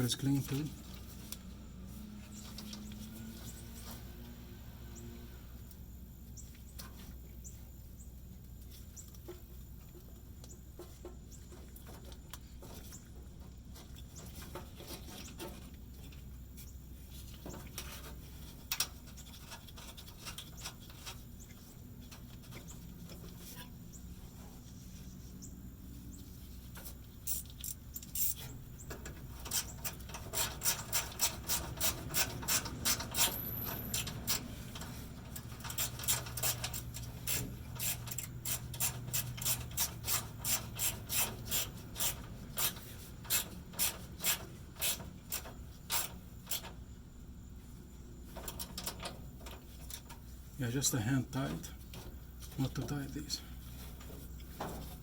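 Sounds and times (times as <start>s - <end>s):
hand tools clicking and tapping: 27.3s - 46.7s.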